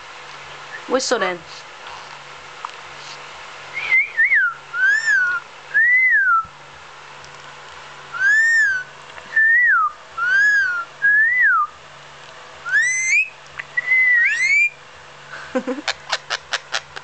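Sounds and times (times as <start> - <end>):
bird whistling: 3.7 - 6.5, 8.1 - 11.7, 12.6 - 14.8
bird chattering and clicking: 15.8 - 17.0.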